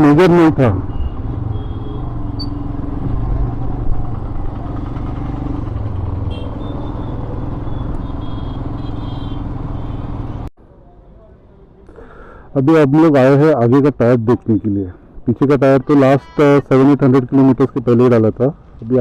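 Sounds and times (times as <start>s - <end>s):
motorcycle engine running: 3.4s - 9.6s.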